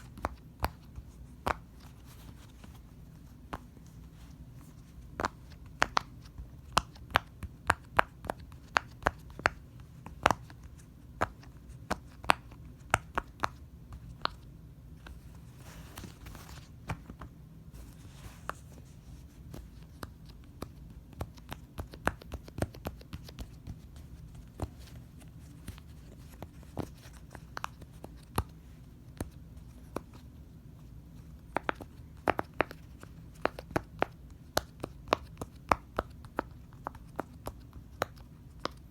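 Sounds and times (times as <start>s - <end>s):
rustling: 15.0s - 20.0s.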